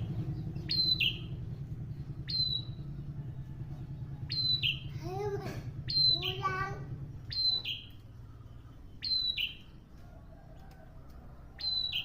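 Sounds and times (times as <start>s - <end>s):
bird whistling call with buzzy note: 0.0s - 1.3s, 2.2s - 2.8s, 4.3s - 4.9s, 5.9s - 6.5s, 7.2s - 9.7s, 11.6s - 12.0s
lower arching call: 0.0s - 1.4s
steady low hum: 0.0s - 10.2s.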